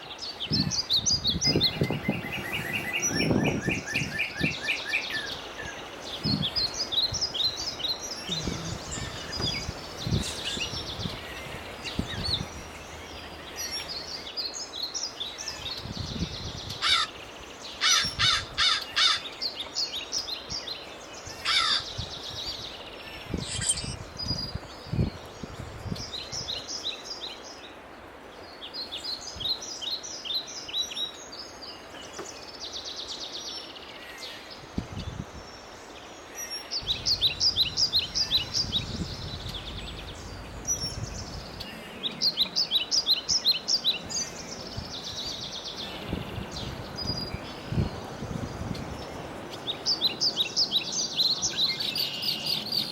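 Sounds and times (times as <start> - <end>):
songbirds singing trills: 0.0 - 52.9
harsh bird calls: 0.6 - 19.6, 21.4 - 22.0, 23.3 - 24.0, 36.4 - 52.9.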